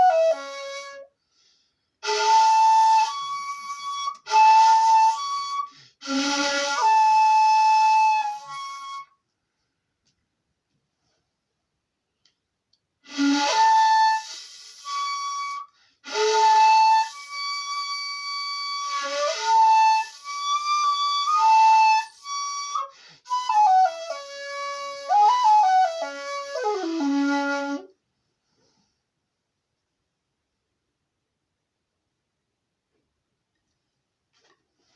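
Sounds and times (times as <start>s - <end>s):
shakuhachi flute melody: 0.0s - 1.2s, 2.0s - 9.3s, 13.0s - 28.0s.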